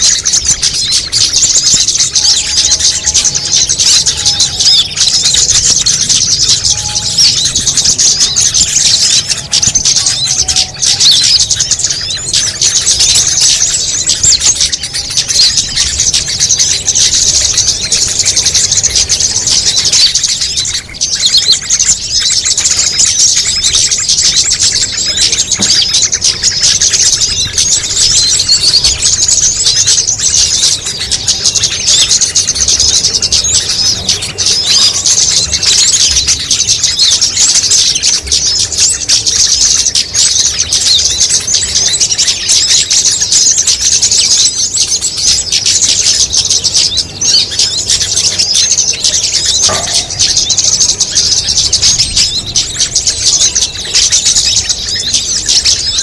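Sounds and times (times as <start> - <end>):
songbirds chirping and trilling: 0.0 - 56.0.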